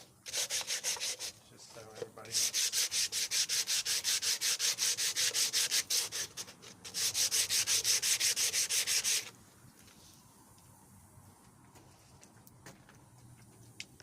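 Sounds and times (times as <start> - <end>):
sandpaper rubbing on plastic: 0.3 - 9.3.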